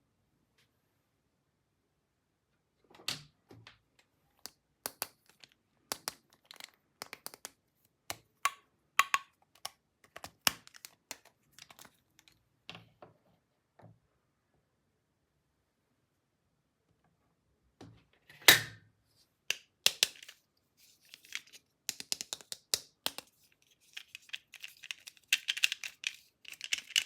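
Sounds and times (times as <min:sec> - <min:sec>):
plastic toy parts clicking: 0:04.4 - 0:12.3, 0:21.1 - 0:27.0.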